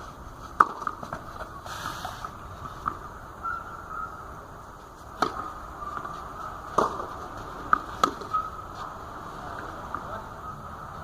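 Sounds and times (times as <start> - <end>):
tennis ball hit pops: 0.6 - 1.3, 5.2 - 6.1, 6.7 - 8.4.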